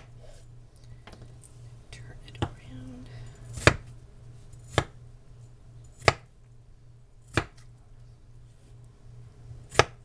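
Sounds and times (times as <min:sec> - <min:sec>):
knife chopping onto cutting board: 0:03.5 - 0:03.9, 0:04.6 - 0:05.0, 0:06.0 - 0:06.3, 0:07.3 - 0:07.7, 0:09.7 - 0:10.0.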